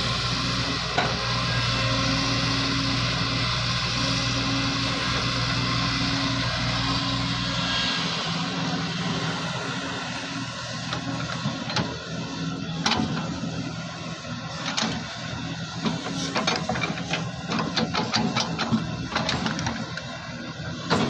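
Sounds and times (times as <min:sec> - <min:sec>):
excavator diesel engine running: 0:00.0 - 0:21.0
excavator bucket clanks and knocks: 0:15.9 - 0:19.9.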